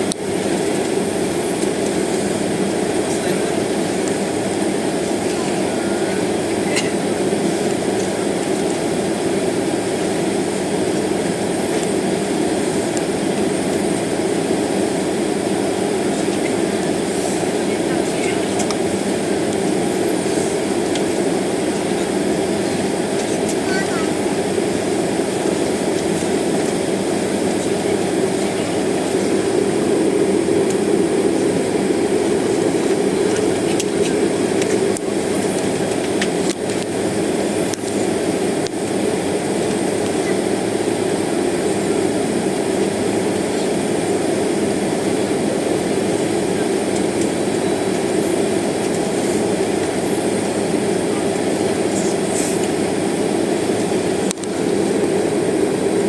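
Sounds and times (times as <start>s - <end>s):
jet engines rumbling: 0.0s - 36.8s
cabin air conditioning: 17.8s - 36.1s.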